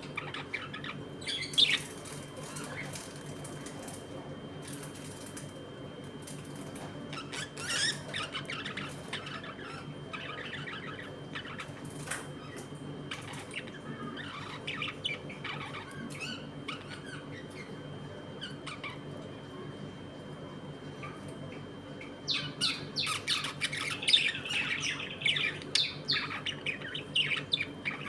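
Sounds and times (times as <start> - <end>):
budgerigars chirping: 0.1 - 2.9, 13.1 - 17.7, 22.1 - 28.0.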